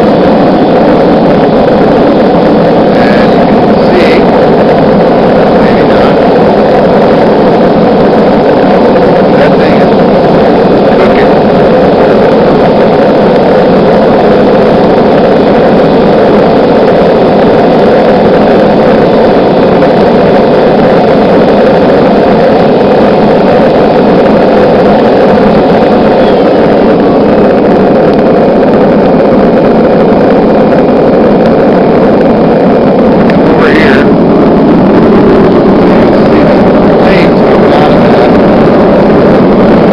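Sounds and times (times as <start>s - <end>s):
gas forge burner roaring: 0.0s - 39.9s.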